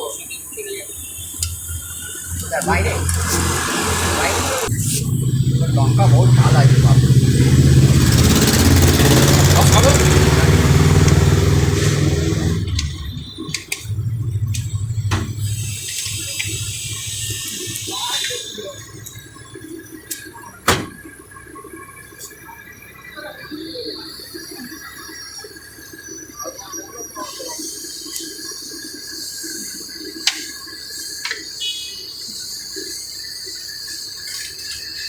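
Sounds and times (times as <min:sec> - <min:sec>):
steady hiss: 0:00.0 - 0:08.0, 0:13.8 - 0:19.2
distant indistinct chatter: 0:00.0 - 0:21.0.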